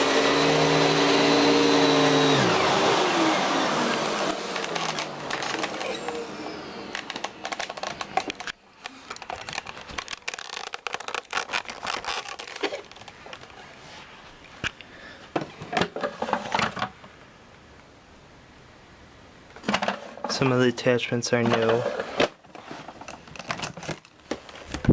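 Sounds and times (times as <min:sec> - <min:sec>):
vacuum motor spinning down: 0:00.0 - 0:08.5
parts clicking and knocking: 0:06.9 - 0:11.3.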